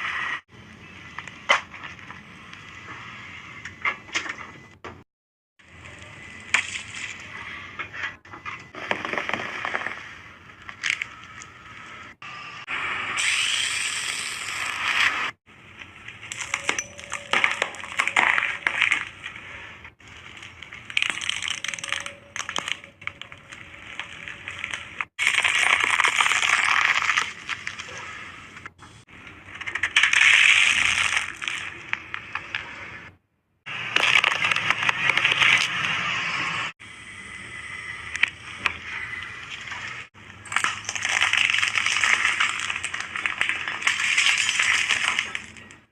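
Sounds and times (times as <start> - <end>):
objects crunching under tyre: 5.7 - 11.9, 13.9 - 36.6, 38.1 - 45.9
sharp clinks and cracks: 16.3 - 18.8.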